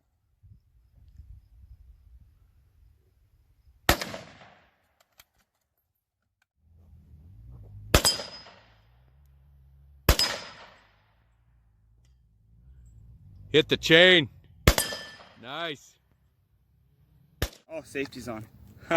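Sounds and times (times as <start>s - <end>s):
rifle shots with echo: 3.9s - 4.7s, 7.9s - 8.7s, 10.1s - 11.0s, 14.6s - 15.4s.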